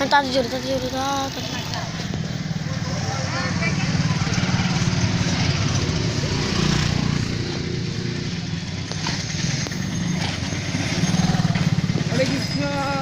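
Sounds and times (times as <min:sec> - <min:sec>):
traffic noise: 0:00.0 - 0:13.0.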